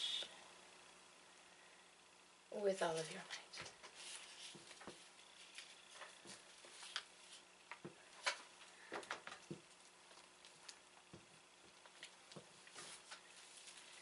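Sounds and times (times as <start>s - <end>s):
faint clicks and rustles: 2.9s - 14.0s.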